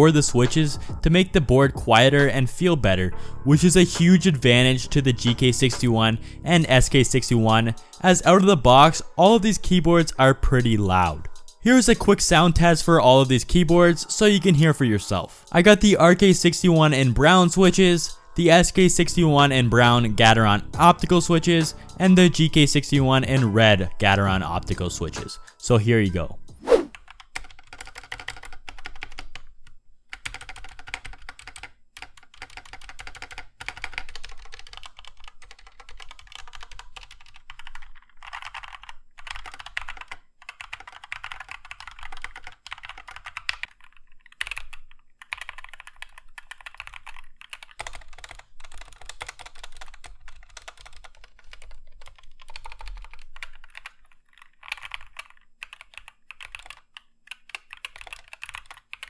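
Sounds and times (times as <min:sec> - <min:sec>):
mechanical keyboard typing: 0:27.1 - 0:29.4, 0:30.1 - 0:59.0.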